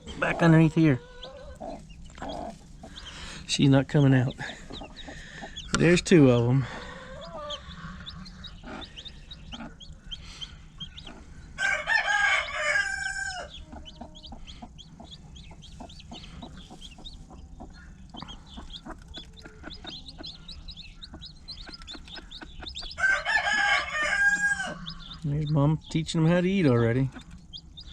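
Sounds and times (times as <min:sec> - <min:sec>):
chicks peeping: 0:00.0 - 0:27.9
rooster crowing: 0:11.6 - 0:14.3, 0:22.9 - 0:25.1.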